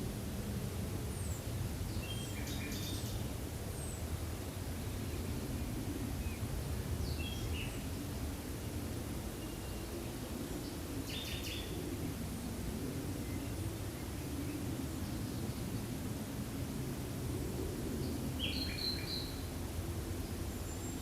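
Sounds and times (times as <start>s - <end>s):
small birds chirping: 1.1s - 4.1s, 18.0s - 19.5s.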